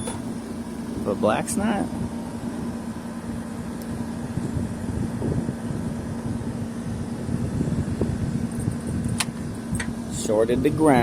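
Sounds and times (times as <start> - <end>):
machinery humming: 0.0 - 8.6.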